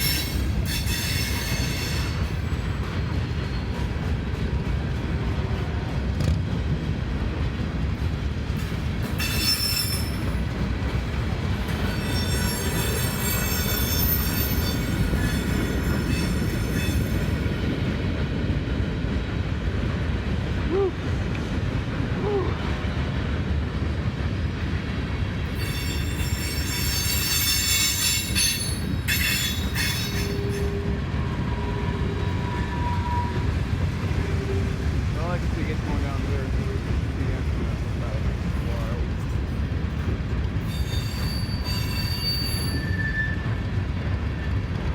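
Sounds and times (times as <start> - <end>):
steel wheels squealing: 0.0 - 4.2, 8.6 - 17.9, 25.5 - 34.8, 40.5 - 44.8
freight train cars rumbling: 0.0 - 44.9.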